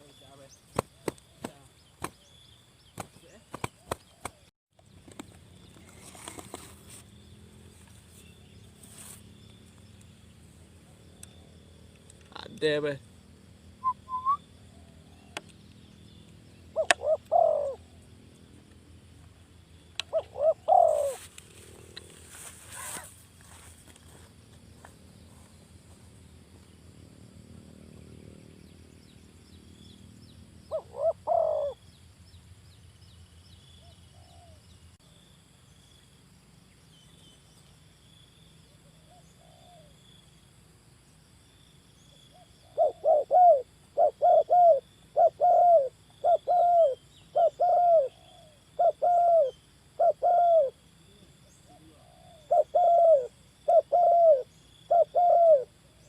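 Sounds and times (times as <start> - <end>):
dove cooing: 16.7 - 18.0, 20.0 - 22.2, 30.7 - 31.8, 38.9 - 40.0, 42.6 - 50.8, 51.6 - 56.0.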